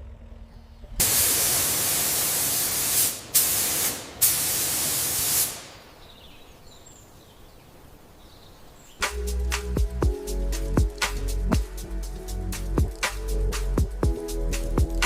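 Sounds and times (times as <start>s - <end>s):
loud hissing spray: 1.0s - 6.1s.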